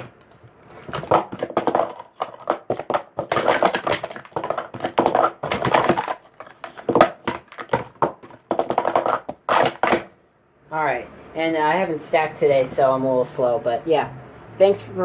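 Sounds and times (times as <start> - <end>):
plastic cups clacking: 0.0 - 10.2.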